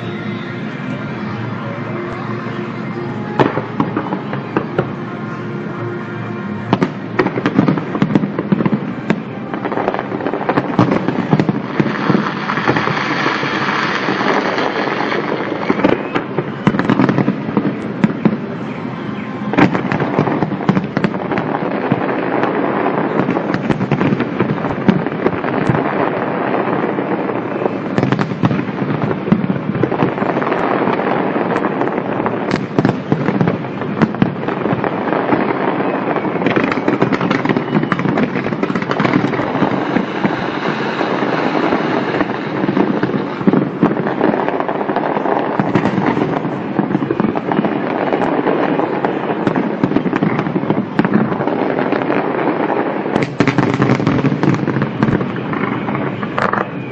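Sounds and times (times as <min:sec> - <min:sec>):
music playing: 0:00.0 - 0:10.4
fireworks banging and crackling: 0:00.0 - 0:56.9.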